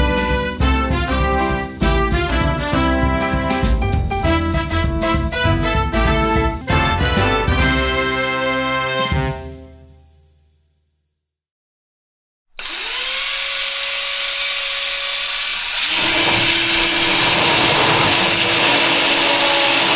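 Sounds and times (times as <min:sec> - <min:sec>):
power tool motor whining: 0:12.6 - 0:19.9.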